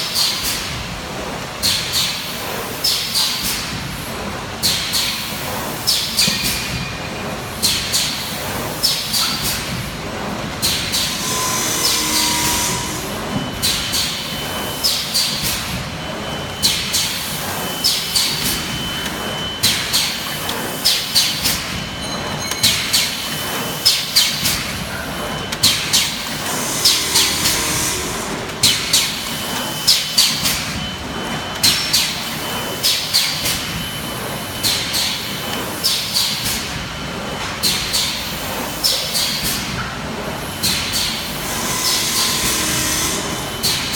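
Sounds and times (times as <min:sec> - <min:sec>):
steady machine noise: 0:06.5 - 0:35.8, 0:40.2 - 0:43.9.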